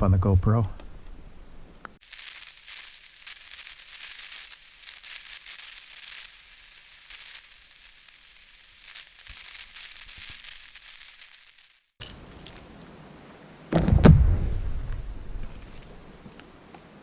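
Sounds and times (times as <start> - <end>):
fizzing crackling hiss: 2.0 - 12.6.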